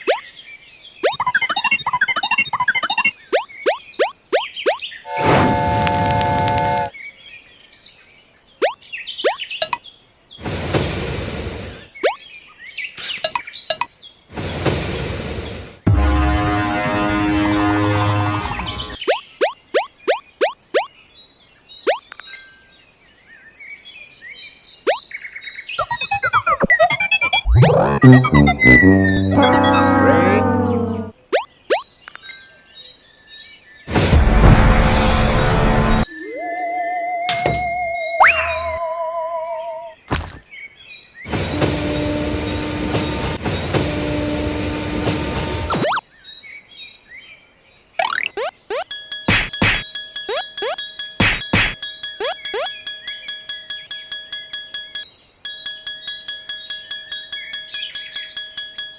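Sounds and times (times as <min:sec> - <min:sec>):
cartoon train running noise: 0:01.2 - 0:03.1, 0:25.8 - 0:31.1, 0:48.0 - 0:55.0
music: 0:05.2 - 0:06.9, 0:15.9 - 0:19.0, 0:26.7 - 0:30.5
train horn blasts: 0:15.9 - 0:18.4
bird-like twittering: 0:21.8 - 0:22.2, 0:48.0 - 0:48.9, 0:52.2 - 0:53.4.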